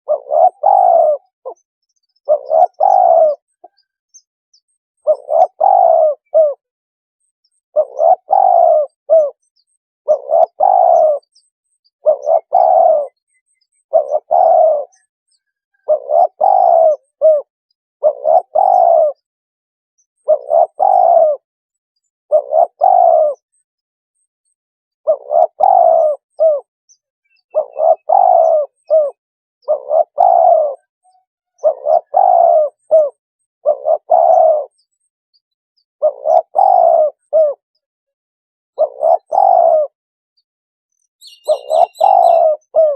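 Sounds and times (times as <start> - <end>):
dove cooing: 0.0 - 1.6, 2.2 - 3.9, 5.0 - 6.7, 7.7 - 11.4, 12.0 - 19.3, 20.2 - 21.5, 22.3 - 23.5, 25.0 - 26.7, 27.4 - 34.8, 36.0 - 37.6, 38.8 - 40.0, 41.2 - 42.9.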